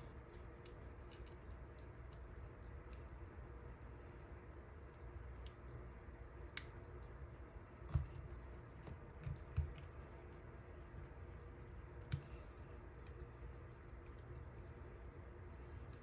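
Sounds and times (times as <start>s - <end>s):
lock picks clicking: 0.3s - 2.2s
soft handling knocks: 7.8s - 9.9s.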